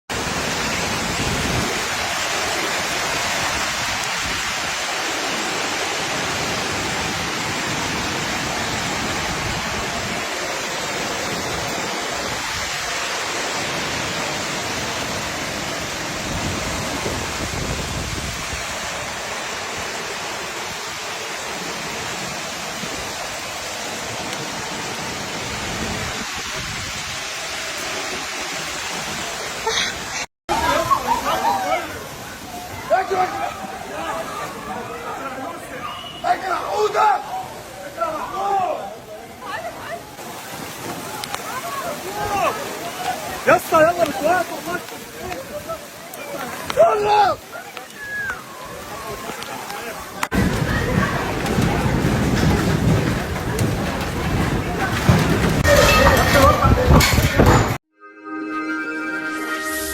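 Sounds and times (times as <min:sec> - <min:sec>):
heavy rain pouring: 0:00.1 - 0:57.8.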